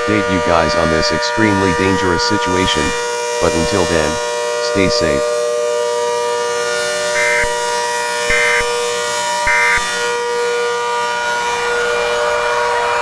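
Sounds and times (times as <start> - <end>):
digital data bursts: 0.0 - 5.3
siren-like drone: 0.0 - 13.0.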